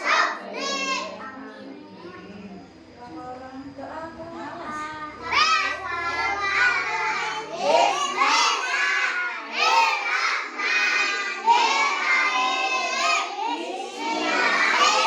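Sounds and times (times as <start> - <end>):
children shouting together: 0.0 - 1.4, 5.1 - 15.0.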